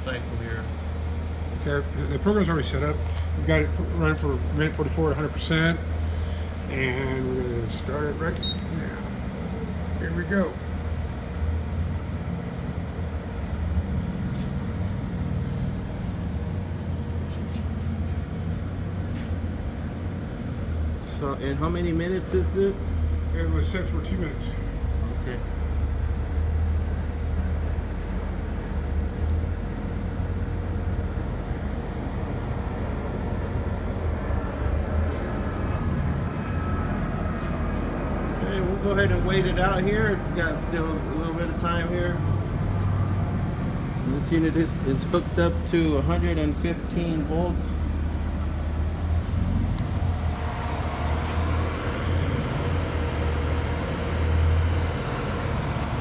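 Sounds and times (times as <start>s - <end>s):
low hum of microwave analyzer: 0.0s - 56.0s
low rumble: 48.3s - 56.0s.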